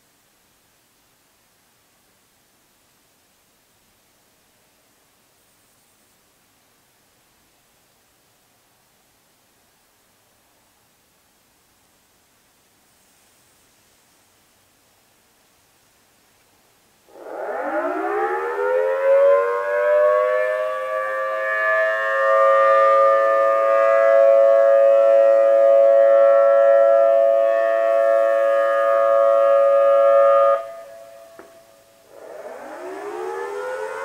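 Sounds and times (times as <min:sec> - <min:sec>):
warning sirens wailing: 0:17.1 - 0:34.0.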